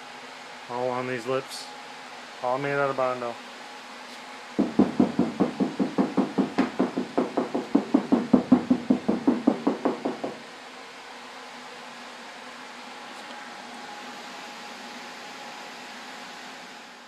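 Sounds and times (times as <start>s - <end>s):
rapid knocking on car body: 4.6s - 10.4s.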